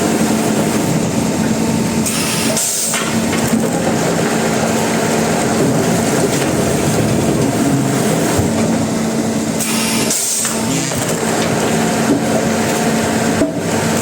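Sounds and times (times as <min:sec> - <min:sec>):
low machinery hum: 0:00.0 - 0:14.0
sawmill machinery clatter: 0:00.0 - 0:14.0.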